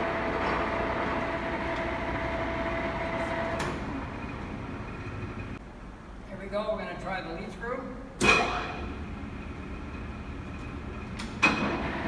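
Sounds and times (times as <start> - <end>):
lathe gears and motor running: 0.0 - 5.6.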